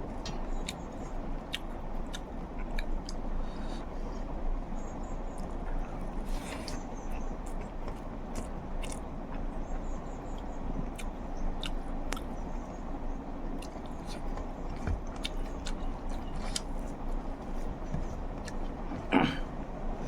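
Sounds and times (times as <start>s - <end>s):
steady low hum: 0.0s - 20.0s
person chewing and smacking food: 0.1s - 3.9s, 5.3s - 12.4s, 13.4s - 19.6s.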